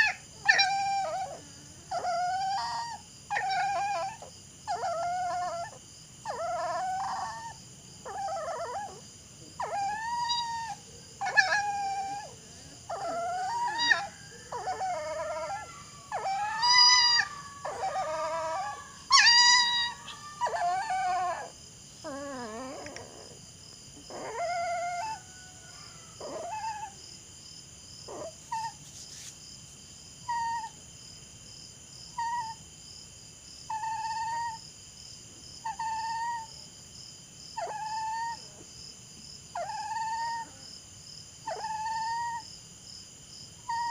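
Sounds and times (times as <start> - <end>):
dog whining and howling: 0.0 - 23.4, 24.0 - 27.0, 28.1 - 28.8, 30.3 - 30.8, 32.2 - 32.6, 33.7 - 34.6, 35.6 - 36.6, 37.6 - 38.6, 39.5 - 40.6, 41.4 - 42.5, 43.6 - 43.9.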